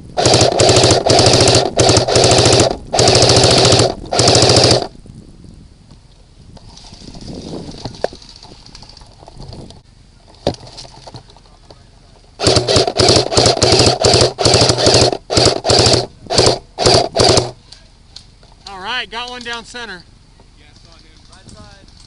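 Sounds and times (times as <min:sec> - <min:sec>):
airsoft gun full-auto bursts: 0:00.2 - 0:04.9, 0:12.4 - 0:17.6.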